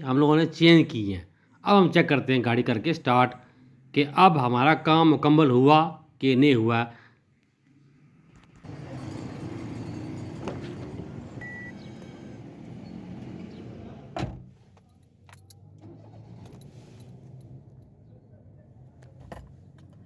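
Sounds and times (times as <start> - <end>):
car engine starting and idling: 8.4 - 14.7, 15.6 - 20.0.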